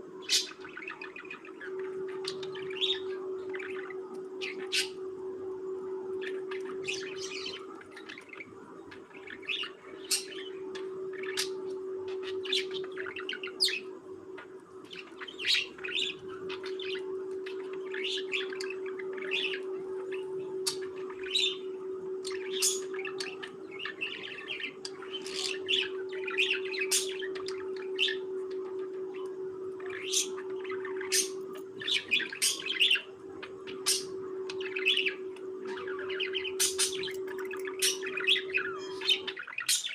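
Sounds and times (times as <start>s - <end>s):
steady low hum: 0.0s - 39.9s
budgerigars chirping: 29.9s - 33.1s, 33.7s - 39.9s.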